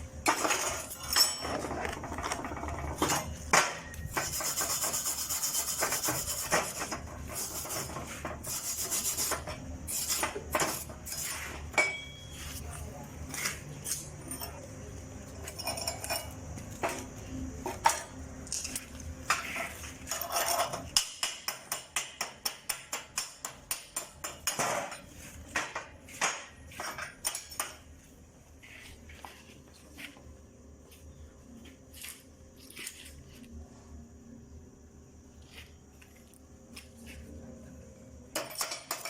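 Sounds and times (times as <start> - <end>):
hammer tapping steel: 11.8 - 12.3, 21.0 - 24.6.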